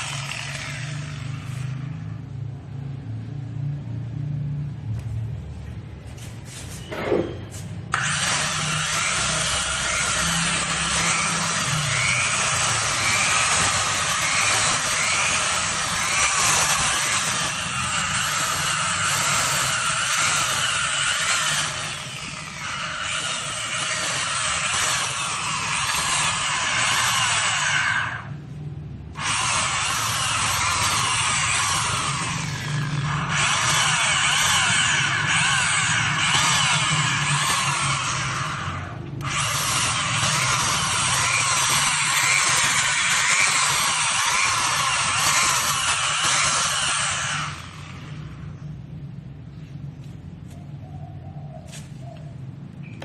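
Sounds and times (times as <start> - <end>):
power tool sanding whir: 0.0 - 2.5, 7.9 - 48.6.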